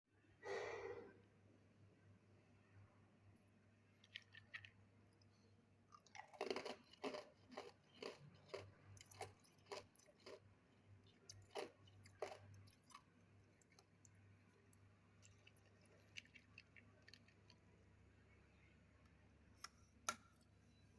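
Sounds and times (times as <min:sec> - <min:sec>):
person crunching ice: 0:06.2 - 0:10.4.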